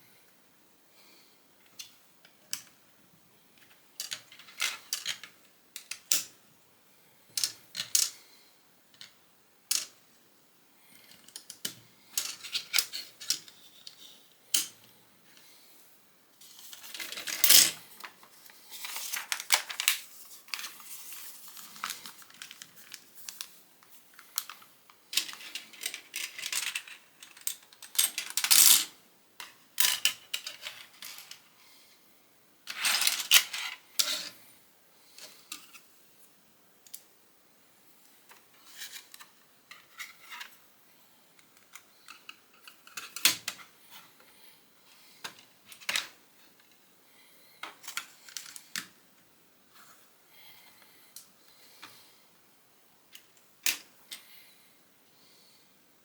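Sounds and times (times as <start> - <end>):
loose plastic pieces rattling: 4.0 - 6.3, 11.1 - 14.7, 16.6 - 17.8, 24.3 - 31.4, 41.6 - 43.7.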